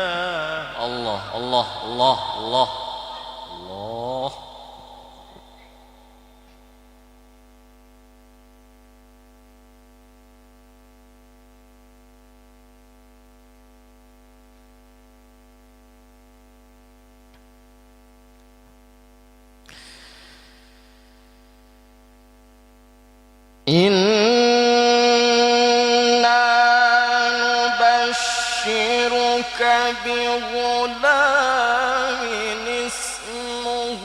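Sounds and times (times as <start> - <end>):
electrical mains hum: 0.0 - 34.0
short breathy hiss: 19.6 - 22.0.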